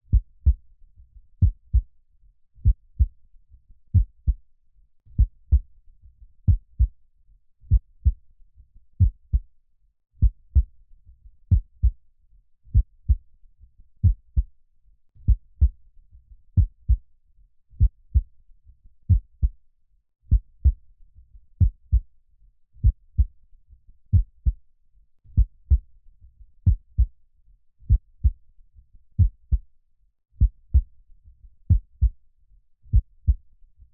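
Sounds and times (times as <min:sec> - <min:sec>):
heartbeat thumping slowly: 0:00.1 - 0:00.6, 0:01.4 - 0:01.9, 0:02.6 - 0:03.2, 0:03.9 - 0:04.4, 0:05.1 - 0:05.7, 0:06.4 - 0:07.0, 0:07.7 - 0:08.2, 0:09.0 - 0:09.5, 0:10.2 - 0:10.8, 0:11.5 - 0:12.0, 0:12.7 - 0:13.3, 0:14.0 - 0:14.5, 0:15.2 - 0:15.8, 0:16.5 - 0:17.0, 0:17.8 - 0:18.3, 0:19.1 - 0:19.6, 0:20.3 - 0:20.8, 0:21.6 - 0:22.1, 0:22.8 - 0:23.4, 0:24.1 - 0:24.6, 0:25.3 - 0:25.9, 0:26.6 - 0:27.1, 0:27.8 - 0:28.4, 0:29.2 - 0:29.6, 0:30.4 - 0:30.9, 0:31.6 - 0:32.2, 0:32.9 - 0:33.5.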